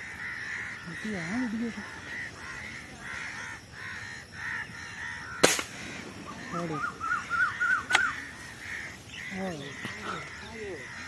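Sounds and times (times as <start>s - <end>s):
crows cawing: 0.0s - 11.0s
short rising-and-falling calls: 4.6s - 11.0s
sharp crack: 5.3s - 6.4s, 7.6s - 8.3s.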